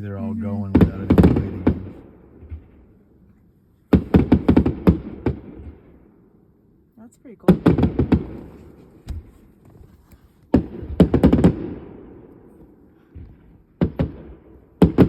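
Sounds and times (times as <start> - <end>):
fireworks bursting: 0.0 - 2.8, 3.9 - 5.9, 10.5 - 12.3
rumbling echo: 0.0 - 3.2.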